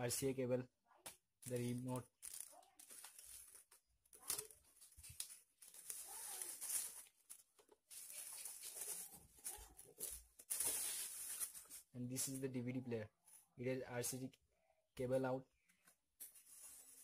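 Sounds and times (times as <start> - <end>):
packaging rustling and crinkling: 1.4 - 11.9.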